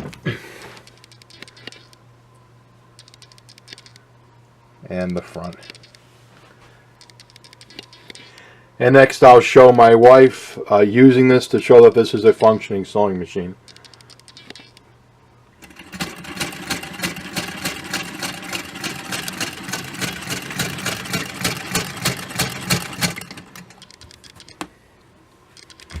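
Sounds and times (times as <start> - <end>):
hand-cranked sewing machine clatter: 15.6 - 23.8.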